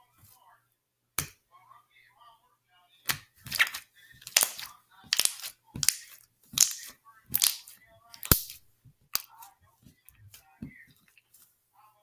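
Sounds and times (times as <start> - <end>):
slime popping: 3.5 - 8.6.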